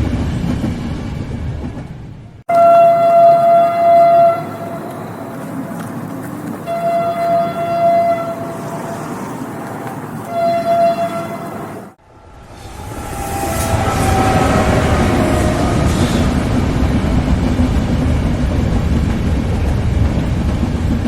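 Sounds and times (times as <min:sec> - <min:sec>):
running train rumble: 0:00.0 - 0:21.0
train horn blasts: 0:02.5 - 0:05.9, 0:06.6 - 0:09.1, 0:10.3 - 0:11.6, 0:12.6 - 0:16.4.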